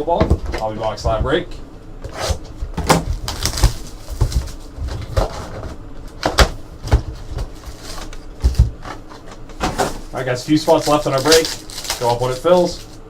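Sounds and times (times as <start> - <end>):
packaging rustling: 2.3 - 13.0
box knocks and thumps: 8.4 - 10.0.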